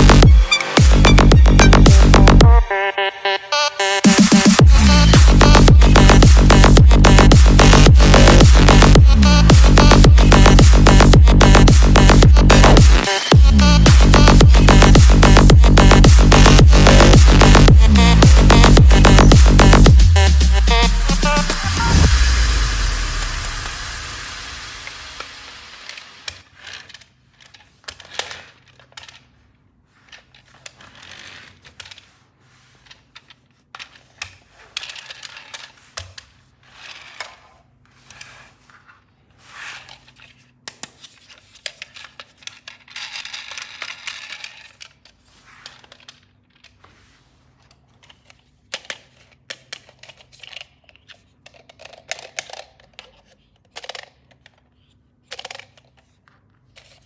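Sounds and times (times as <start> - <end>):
plastic toy pieces clicking: 40.7 - 46.7, 48.0 - 57.0.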